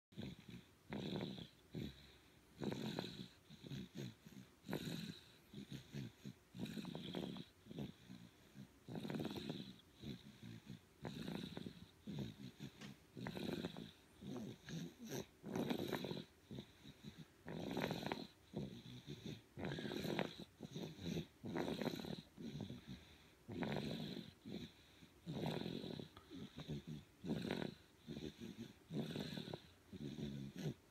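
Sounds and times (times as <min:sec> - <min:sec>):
baby snoring: 0:00.1 - 0:30.9.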